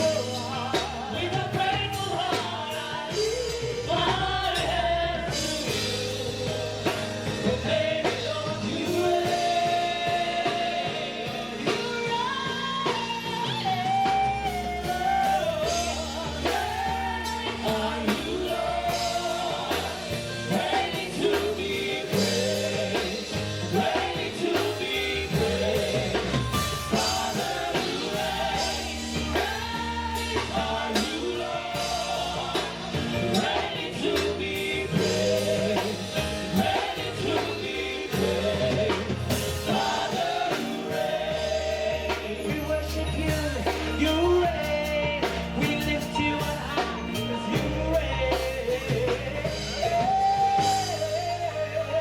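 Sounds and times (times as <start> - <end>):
bass: 0.0 - 52.0
drum kit: 0.0 - 52.0
guitar: 0.0 - 52.0
worship team singing: 0.0 - 52.0.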